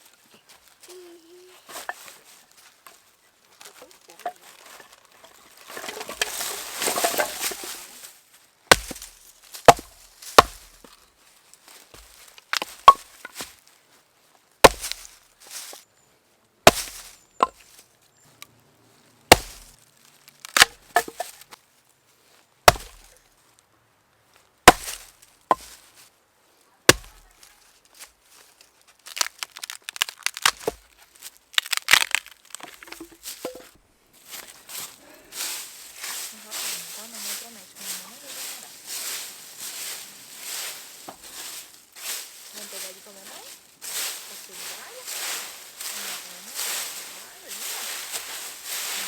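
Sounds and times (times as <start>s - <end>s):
short rustle: 0.0s - 14.1s, 27.1s - 49.0s
axe chopping wood: 5.7s - 7.7s, 8.7s - 10.9s, 11.9s - 13.4s, 14.6s - 15.1s, 16.6s - 17.6s, 19.3s - 19.8s, 20.5s - 21.4s, 22.7s - 23.2s, 24.6s - 25.8s, 26.9s - 27.2s, 29.6s - 31.0s, 31.6s - 33.7s.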